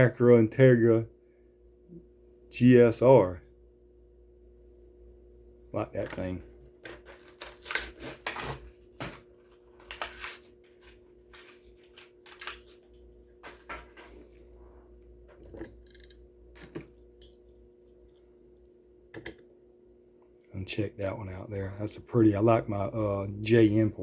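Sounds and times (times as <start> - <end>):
faint steady hum: 0.0 - 24.0
plastic and card packaging tearing: 6.9 - 9.2, 9.8 - 13.0.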